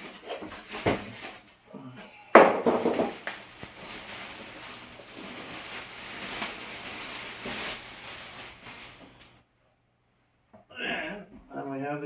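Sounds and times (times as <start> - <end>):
packing material rustling: 0.0 - 1.6, 2.4 - 9.4.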